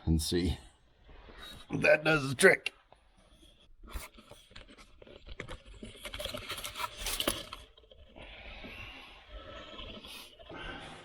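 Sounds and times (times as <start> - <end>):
aluminium foil crinkling: 3.9 - 8.3.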